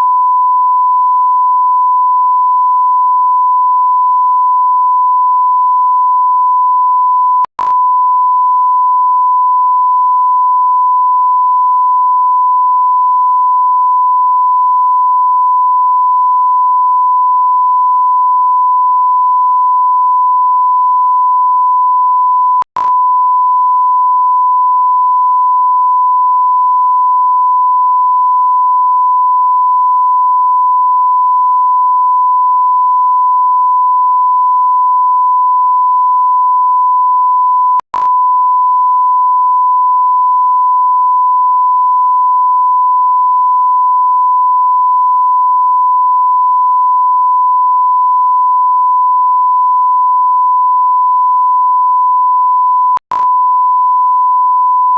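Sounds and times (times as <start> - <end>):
steady sine-wave beep tone: 0.0 - 54.9
click: 7.4 - 7.8, 22.6 - 23.0, 37.8 - 38.2, 52.9 - 53.4.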